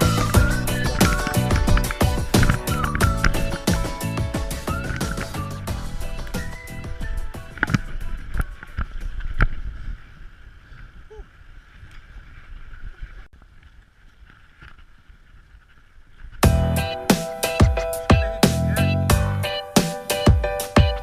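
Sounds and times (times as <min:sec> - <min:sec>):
music with a beat: 0:00.0 - 0:08.5, 0:16.4 - 0:21.0.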